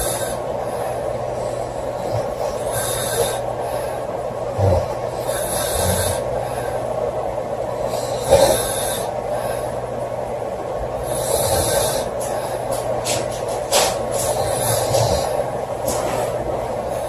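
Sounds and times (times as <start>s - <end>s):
woman snoring: 0.0s - 0.4s, 1.4s - 3.9s, 4.5s - 6.8s, 7.8s - 9.6s, 11.0s - 12.6s, 14.2s - 15.6s
background hum: 0.0s - 17.0s.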